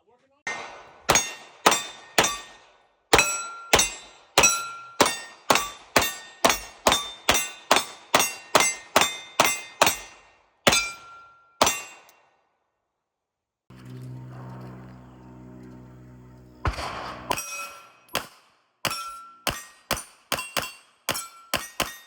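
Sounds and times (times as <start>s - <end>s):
pistol shots: 0.5s - 2.6s, 14.3s - 22.0s
metallic ring: 13.7s - 18.2s, 18.9s - 22.0s.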